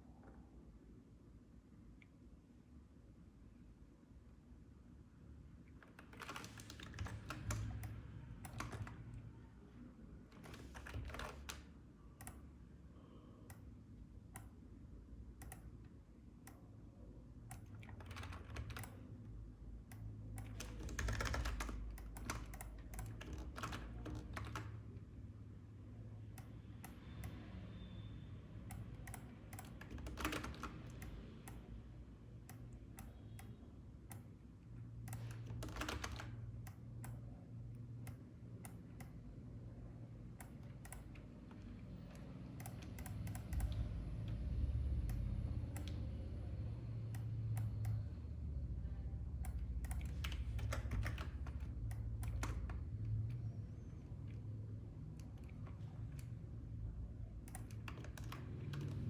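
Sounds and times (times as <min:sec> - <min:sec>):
low steady hum: 0:00.0 - 0:59.0
computer keyboard clicking: 0:05.8 - 0:09.2, 0:10.3 - 0:12.5, 0:15.3 - 0:15.8, 0:17.4 - 0:19.2, 0:19.9 - 0:24.9, 0:28.6 - 0:31.7, 0:32.4 - 0:34.3, 0:34.9 - 0:39.2, 0:40.3 - 0:46.1, 0:49.4 - 0:53.6, 0:57.4 - 0:59.0.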